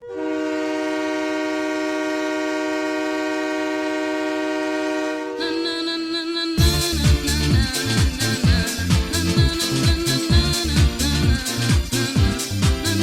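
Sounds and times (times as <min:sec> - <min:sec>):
goal horn: 0:00.0 - 0:06.0.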